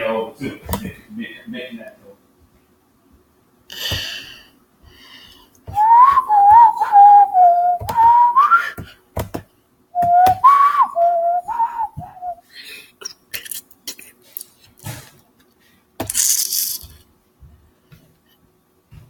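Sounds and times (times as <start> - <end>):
person whistling a tune: 5.7 - 8.8, 10.0 - 12.4.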